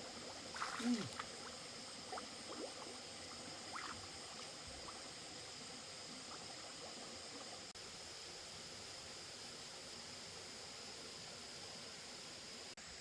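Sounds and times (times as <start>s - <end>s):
flowing water: 0.0s - 8.0s.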